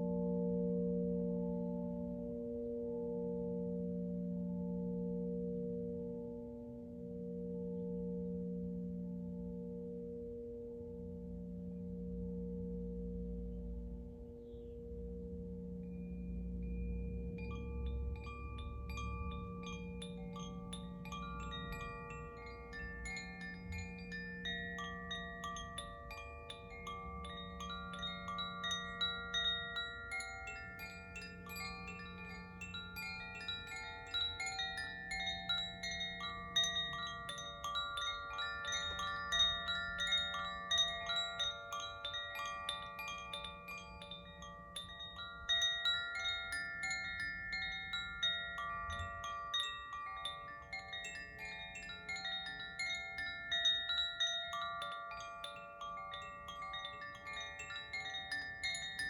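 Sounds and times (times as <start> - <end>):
singing bowls humming: 0.0 - 59.0
wind chimes tinkling: 12.6 - 59.0.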